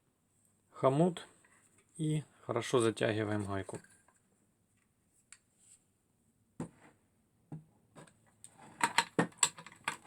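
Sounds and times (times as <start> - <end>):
tools and parts clicking: 8.8 - 10.0.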